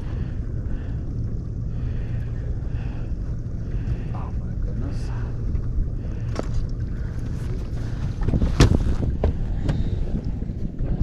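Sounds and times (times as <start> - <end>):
water on boat: 0.0 - 11.0
wind rumble: 0.0 - 11.0.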